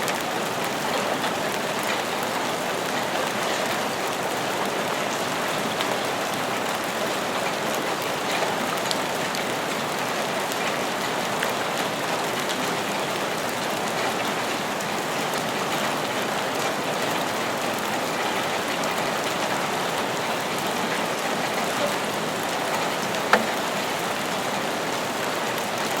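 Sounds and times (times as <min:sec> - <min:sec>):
raindrop ticks: 0:23.3 - 0:23.6.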